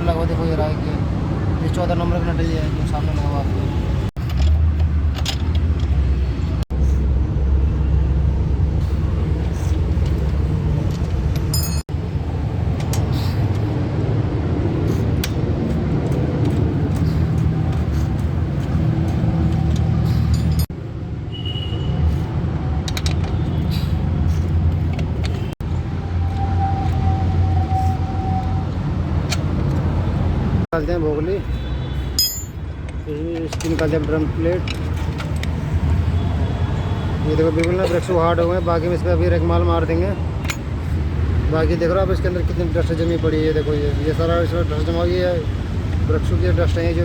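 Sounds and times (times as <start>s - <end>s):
metallic clinks of tools: 11.5s - 11.9s, 20.2s - 20.7s, 32.2s - 32.6s.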